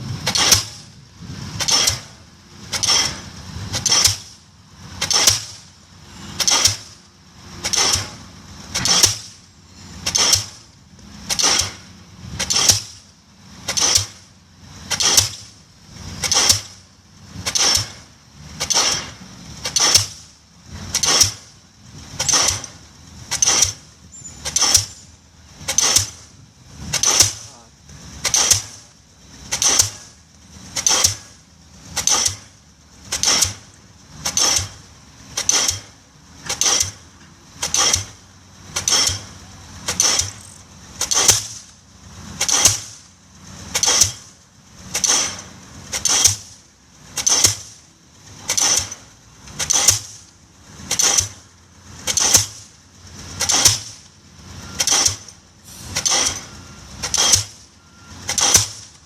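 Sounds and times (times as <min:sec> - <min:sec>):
pile hammer blows: 0:00.2 - 0:00.9, 0:01.5 - 0:07.0, 0:07.6 - 0:10.7, 0:11.3 - 0:13.0, 0:13.6 - 0:15.5, 0:16.2 - 0:16.8, 0:17.4 - 0:20.2, 0:20.8 - 0:21.5, 0:22.1 - 0:47.8, 0:48.4 - 0:59.0.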